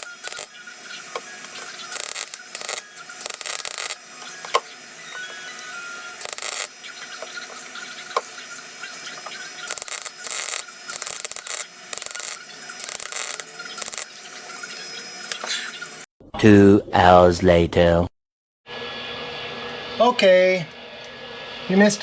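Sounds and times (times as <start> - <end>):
steady hum: 0.0 - 16.0
welder crackling bursts: 0.0 - 16.0.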